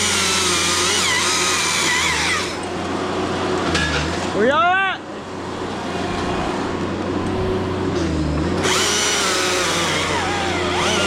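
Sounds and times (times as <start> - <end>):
small engine running: 0.0 - 4.4, 5.5 - 11.0
louder machine rising and falling: 5.6 - 11.0.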